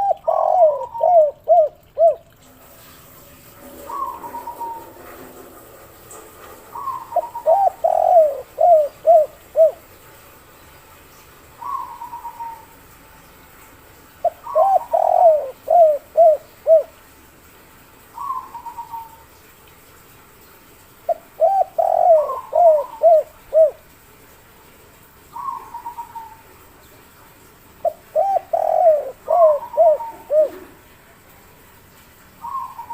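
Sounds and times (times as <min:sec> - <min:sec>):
dove cooing: 0:00.0 - 0:02.3, 0:03.7 - 0:05.3, 0:06.7 - 0:09.8, 0:11.6 - 0:12.8, 0:14.2 - 0:17.0, 0:18.2 - 0:19.2, 0:21.1 - 0:23.9, 0:25.3 - 0:26.5, 0:27.8 - 0:30.9, 0:32.4 - 0:32.9
higher falling bird call: 0:03.8 - 0:05.0.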